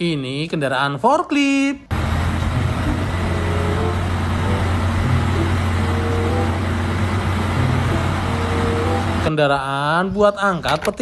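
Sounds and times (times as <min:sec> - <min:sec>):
engine droning: 0:01.9 - 0:09.3
road noise: 0:01.9 - 0:09.6.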